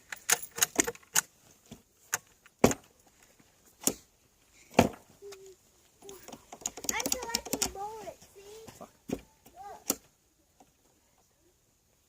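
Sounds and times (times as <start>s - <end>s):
metallic clicks of rifles: 0.0s - 1.3s, 6.0s - 7.8s.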